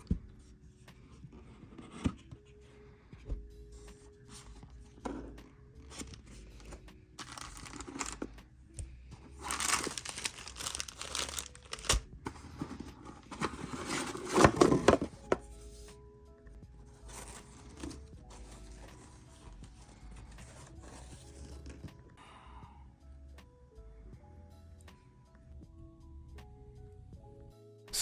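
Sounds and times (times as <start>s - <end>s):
packaging crinkling and tearing: 5.9s - 8.3s, 9.4s - 12.4s.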